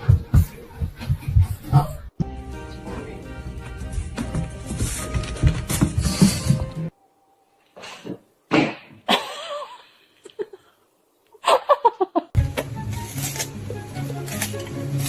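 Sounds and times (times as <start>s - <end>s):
background music: 1.7s - 7.0s, 12.4s - 15.0s.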